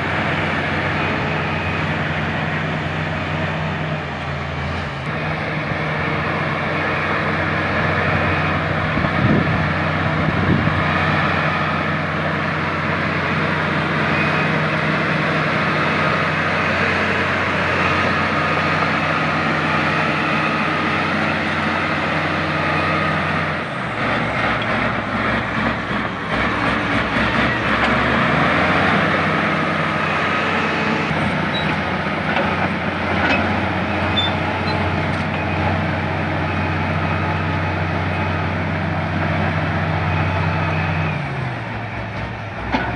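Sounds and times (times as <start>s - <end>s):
bulldozer diesel engine under load: 0.0s - 42.9s
steel tracks squealing and clattering: 13.8s - 14.8s, 15.5s - 38.4s.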